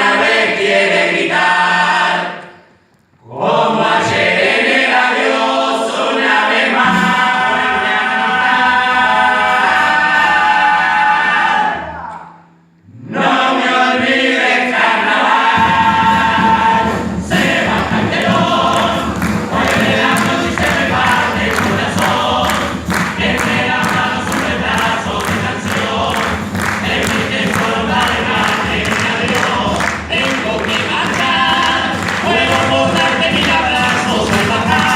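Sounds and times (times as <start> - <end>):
vocal group singing in harmony: 0.0 - 34.9
beat of sharp hits: 6.8 - 8.8.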